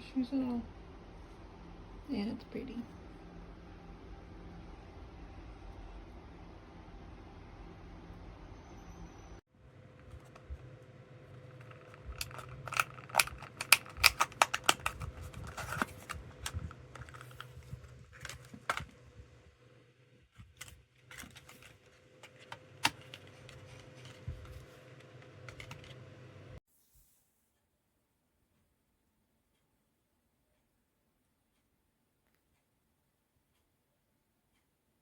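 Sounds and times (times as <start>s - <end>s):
faint steady hum: 0.0s - 26.6s
mouse and keyboard clicks: 11.5s - 18.9s.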